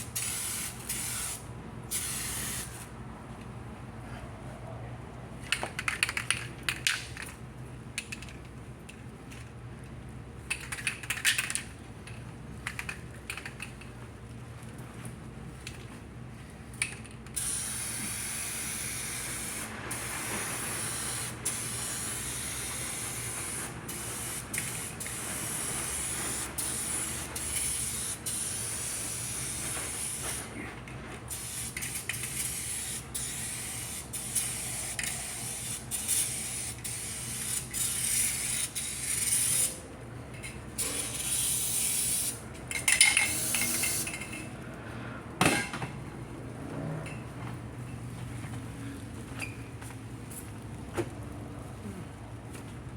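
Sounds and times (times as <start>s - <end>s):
spray paint hissing on metal: 0.0s - 2.9s, 17.4s - 30.6s, 31.3s - 39.8s, 40.8s - 44.3s.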